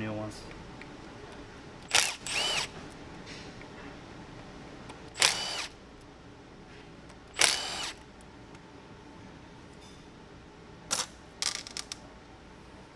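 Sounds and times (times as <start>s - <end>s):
electric screwdriver whirring: 0.5s - 3.8s, 4.4s - 5.9s, 7.1s - 8.2s.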